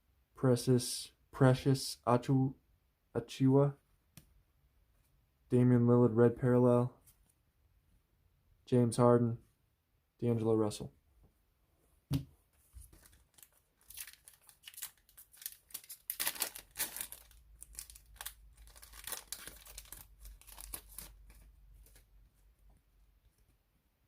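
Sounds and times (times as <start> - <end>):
plastic wrapper crinkling and tearing: 12.8 - 22.1.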